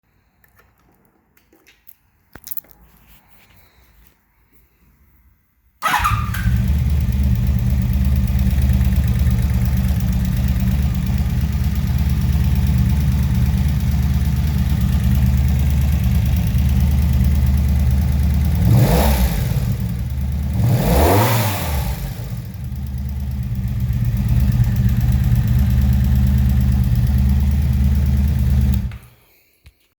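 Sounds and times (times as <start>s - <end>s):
motorcycle engine idling and revving: 5.8s - 29.1s.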